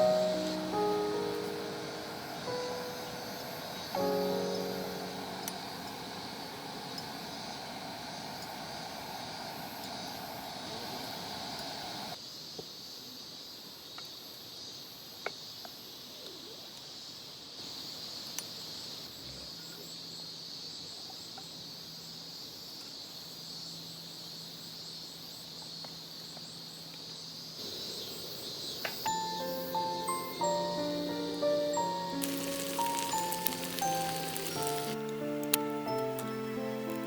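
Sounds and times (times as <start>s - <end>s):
insects trilling: 0.0s - 37.0s.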